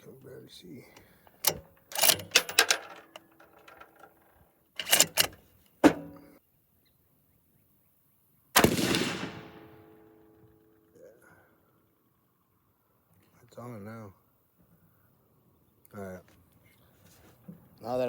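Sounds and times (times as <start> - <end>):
sharp metallic clicks: 1.0 - 6.2
rifle shot: 8.6 - 10.2.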